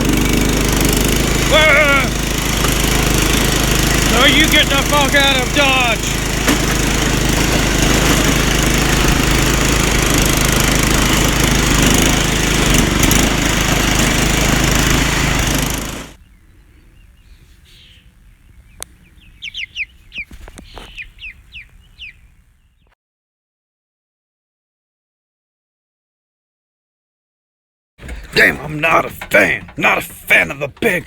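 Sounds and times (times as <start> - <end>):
riding lawn mower engine running: 0.0 - 22.8, 28.0 - 31.0
short falling bird chirps: 16.2 - 22.9
faint clicks: 18.7 - 19.0.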